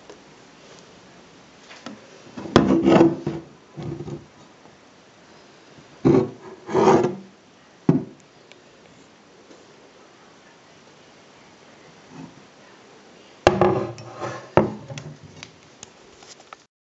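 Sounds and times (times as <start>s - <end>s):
wood rubbing and scraping: 2.4s - 4.3s, 6.1s - 7.3s, 13.5s - 15.4s.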